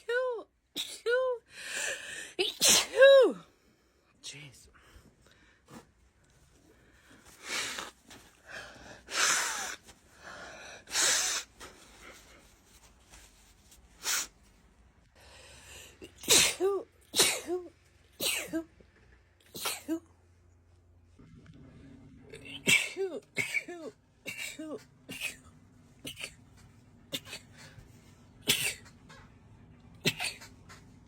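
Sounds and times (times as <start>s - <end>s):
woman sneezing: 2.4s - 3.5s, 16.0s - 18.7s, 19.5s - 20.1s, 22.4s - 25.4s.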